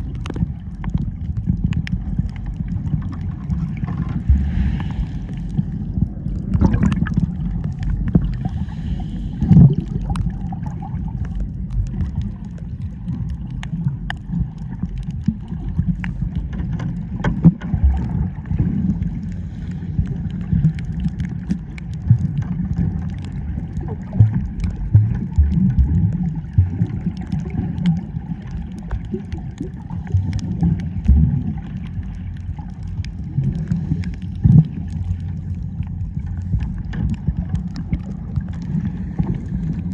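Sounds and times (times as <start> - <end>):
water sloshing and gurgling: 0.0 - 39.9.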